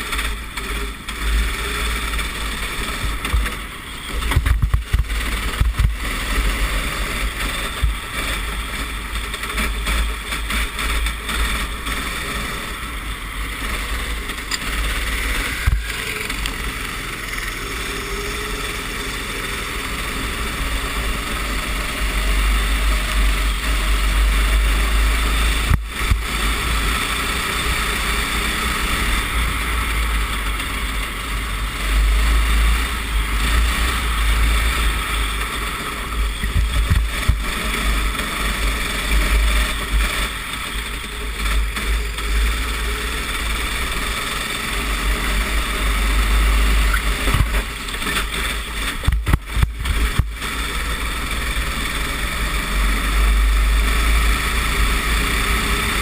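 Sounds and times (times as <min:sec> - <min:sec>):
wind rumble on microphone: 0:00.0 - 0:17.1, 0:28.8 - 0:42.3, 0:44.8 - 0:51.6
kart engine revving: 0:00.0 - 0:56.0.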